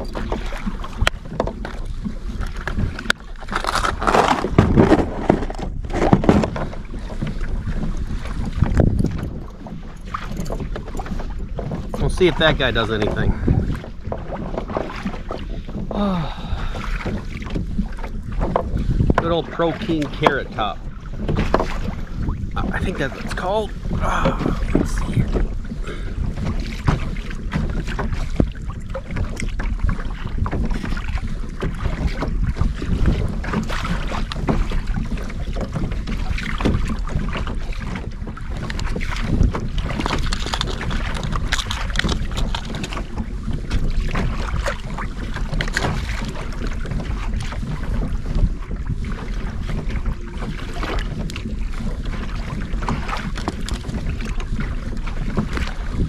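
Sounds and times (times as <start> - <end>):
low rumble: 0.0 - 30.8
water lapping against kayak hull: 0.0 - 56.0
wind buffeting microphone: 0.0 - 56.0.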